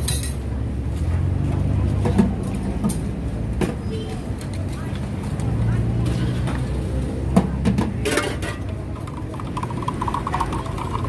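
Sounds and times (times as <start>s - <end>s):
low traffic rumble: 0.0s - 11.0s
warbling steady tone: 8.9s - 11.0s.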